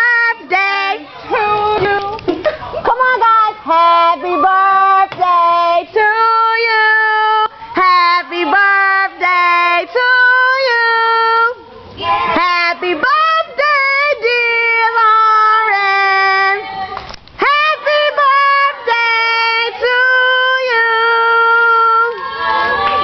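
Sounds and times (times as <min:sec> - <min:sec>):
girl singing long notes: 0:12.3 - 0:22.2.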